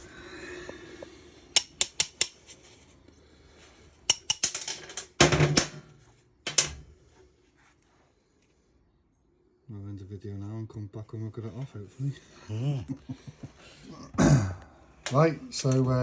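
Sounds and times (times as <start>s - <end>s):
metal hand tools clicking: 1.6s - 2.6s, 4.1s - 5.0s.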